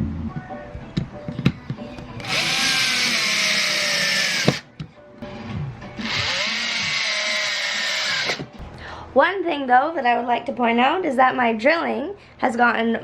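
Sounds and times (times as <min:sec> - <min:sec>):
power drill driving screws: 0:02.2 - 0:04.7, 0:06.0 - 0:08.5.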